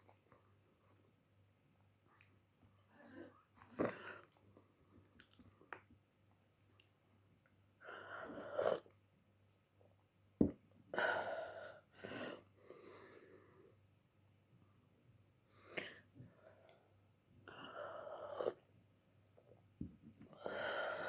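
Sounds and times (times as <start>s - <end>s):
chewing: 3.5s - 5.9s
breathing: 11.0s - 13.8s.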